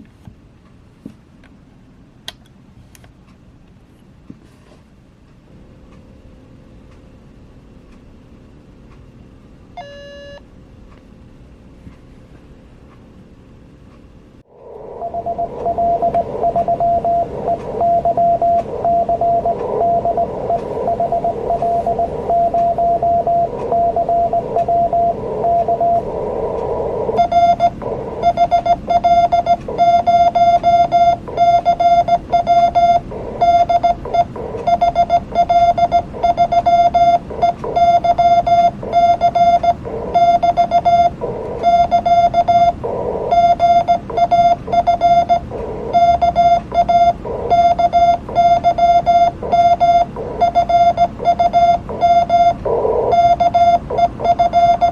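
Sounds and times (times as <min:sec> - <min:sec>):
morse code tone: 0:09.8 - 0:10.4, 0:14.6 - 0:54.9
receiver hiss: 0:14.5 - 0:54.9.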